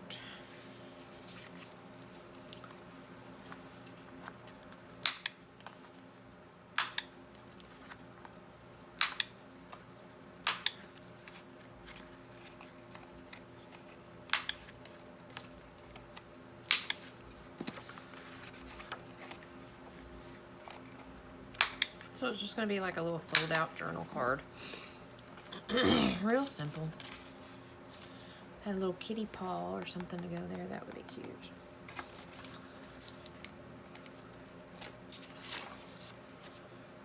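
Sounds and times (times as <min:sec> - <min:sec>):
faint steady hum: 0:00.0 - 0:37.0
paper and card clicks and snaps: 0:05.0 - 0:05.8, 0:06.8 - 0:07.1, 0:09.0 - 0:09.4, 0:10.4 - 0:11.0, 0:14.3 - 0:17.9, 0:21.6 - 0:22.1.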